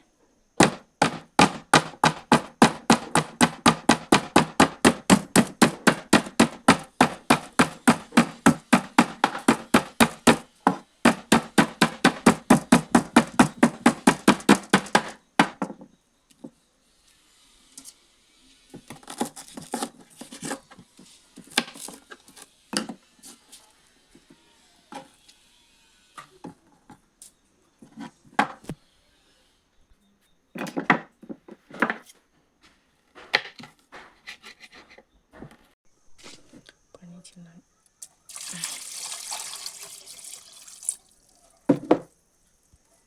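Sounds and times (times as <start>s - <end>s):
knife chopping on cutting board: 0.6s - 15.7s
quiet irregular knocks: 0.6s - 16.6s.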